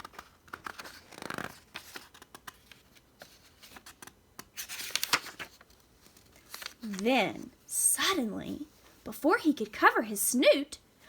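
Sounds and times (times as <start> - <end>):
page turning swishes: 0.0 - 7.0
book pages rustling: 0.0 - 7.5.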